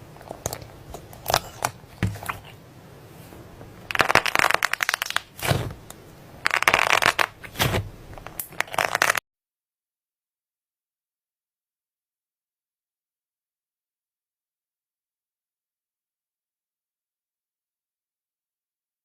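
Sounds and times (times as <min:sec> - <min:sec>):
slime crackling and popping: 0:03.9 - 0:09.2.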